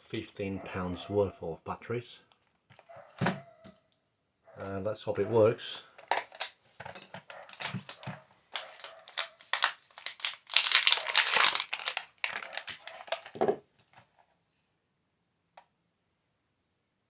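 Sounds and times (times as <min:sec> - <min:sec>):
plastic packaging crinkling: 0:06.0 - 0:14.1.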